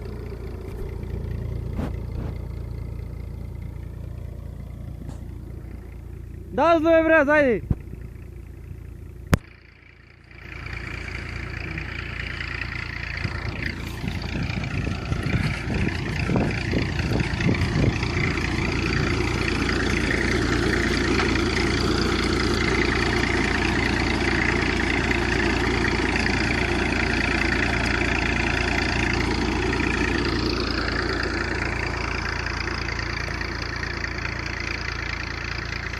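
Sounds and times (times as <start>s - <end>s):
tractor engine running: 0.0s - 35.9s.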